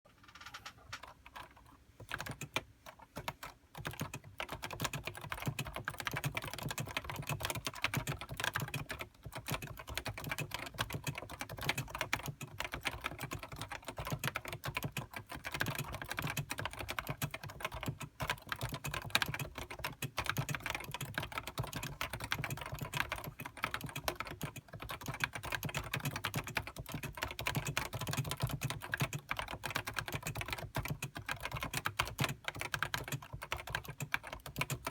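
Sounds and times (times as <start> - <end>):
fast keyboard typing: 0.2 - 34.9.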